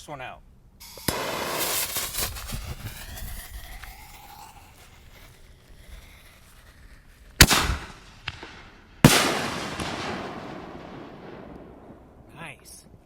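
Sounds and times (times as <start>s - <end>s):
firework mortar launch bang: 0.8s - 12.3s
firework shell bursting with echo: 0.8s - 12.3s.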